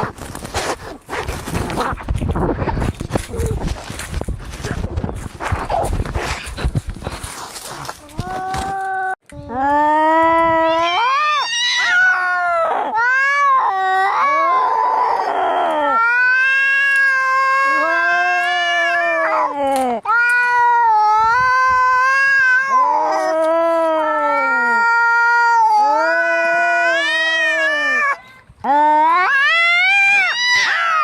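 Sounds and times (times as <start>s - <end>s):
harsh rough cat cry: 10.2s - 31.0s
cats yowling in a fight: 10.4s - 28.2s, 28.8s - 31.0s.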